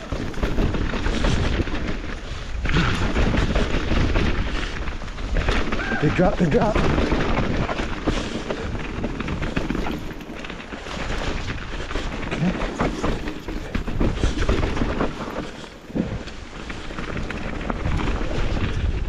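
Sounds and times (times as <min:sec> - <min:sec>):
bike rattling and knocking: 0:00.0 - 0:19.0
bike tyres rolling over dirt: 0:00.0 - 0:19.0.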